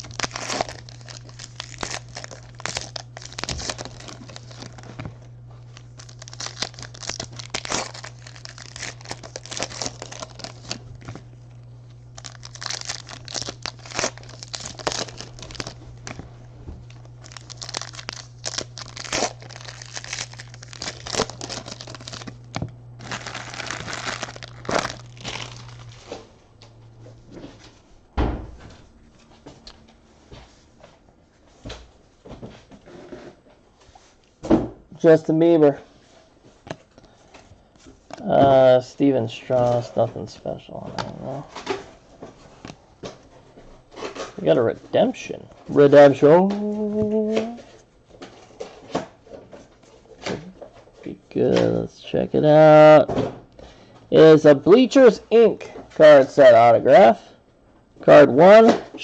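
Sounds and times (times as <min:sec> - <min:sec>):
wrappers crinkling and tearing: 0:00.0 - 0:26.3
low hum: 0:00.0 - 0:30.3
thump: 0:28.2 - 0:28.7.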